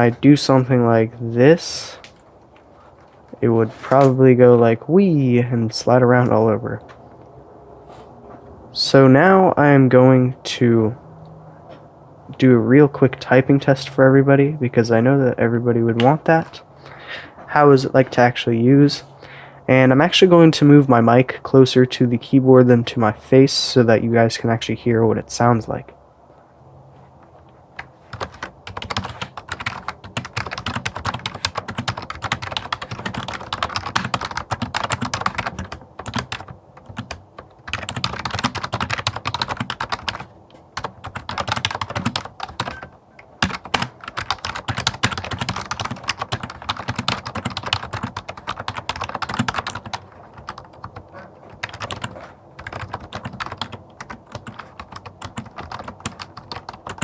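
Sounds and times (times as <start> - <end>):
keyboard keys clattering: 27.7 - 57.0.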